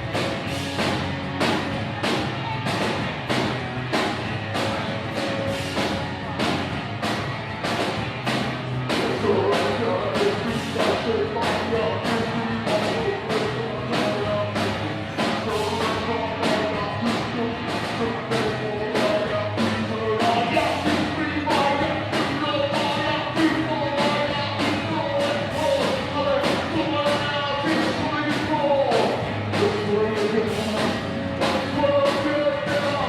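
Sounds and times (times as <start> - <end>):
rock band playing live: 0.0 - 33.0
steady drum beat: 0.0 - 33.0
person singing: 8.9 - 33.0.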